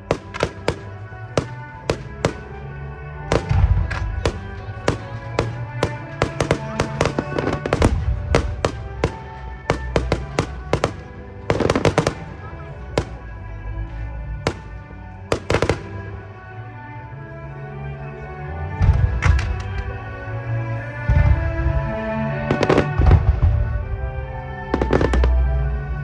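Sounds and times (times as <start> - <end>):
fireworks bangs and crackles: 0.0 - 16.4, 22.4 - 24.0, 24.6 - 25.8
music: 0.0 - 26.0.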